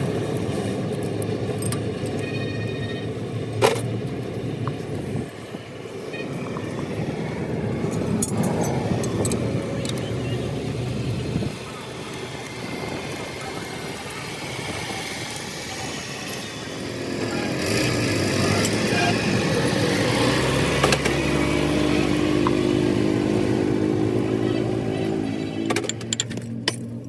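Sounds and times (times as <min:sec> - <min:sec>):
vehicle engine running: 0:00.0 - 0:27.0.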